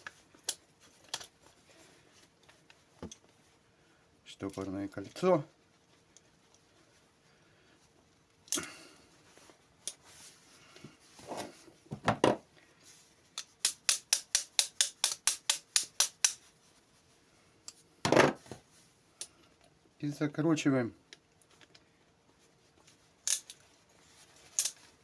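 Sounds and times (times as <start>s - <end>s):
ratchet clicking: 13.4s - 16.4s
metal parts knocking and scraping: 24.5s - 24.8s.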